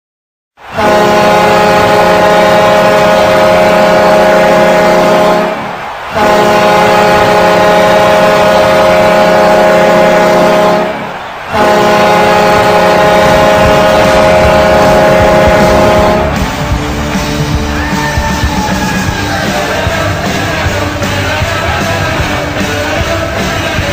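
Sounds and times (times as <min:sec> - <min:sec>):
deep air horn blasts: 0:00.6 - 0:22.6
music: 0:13.2 - 0:23.9.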